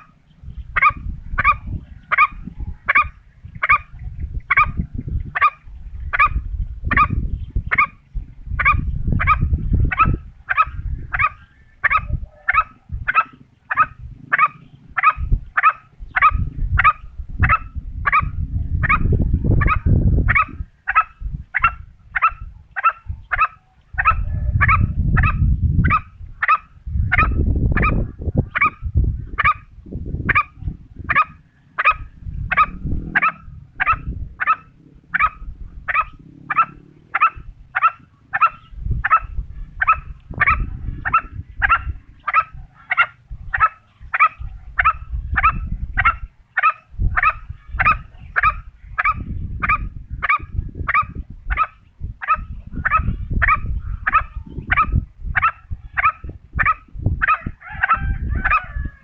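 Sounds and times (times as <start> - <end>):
low rumbling: 0.0 - 23.4, 24.0 - 59.0
animal short calls: 30.3 - 57.4.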